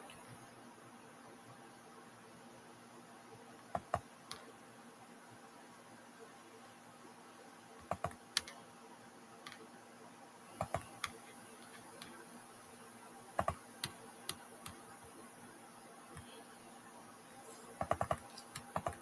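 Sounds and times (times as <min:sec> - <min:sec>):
faint steady hiss: 0:00.0 - 0:19.0
keyboard keys clicking: 0:03.8 - 0:04.5, 0:07.8 - 0:08.6, 0:10.6 - 0:12.2, 0:13.4 - 0:14.8, 0:17.8 - 0:19.0.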